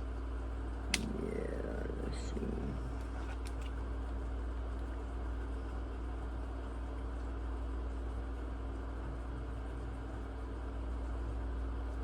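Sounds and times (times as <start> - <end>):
fan or appliance humming: 0.0 - 12.0.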